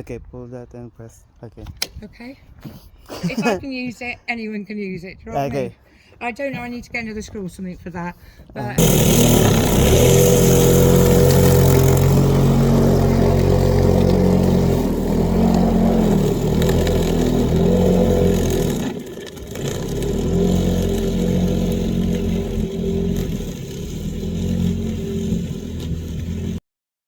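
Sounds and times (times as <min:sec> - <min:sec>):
electric lawn mower running: 0:08.8 - 0:26.6.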